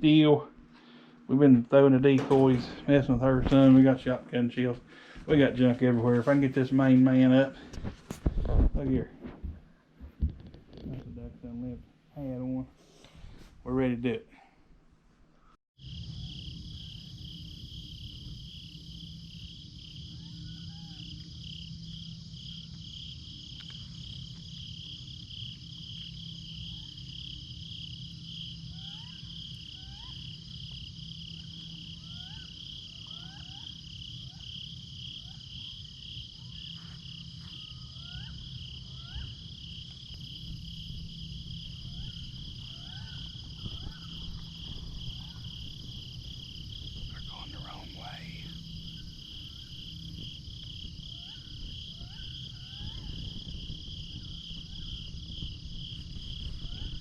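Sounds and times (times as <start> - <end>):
crickets trilling: 15.8 - 57.0
low rumble: 35.9 - 57.0
faint rising chirps: 36.4 - 53.4.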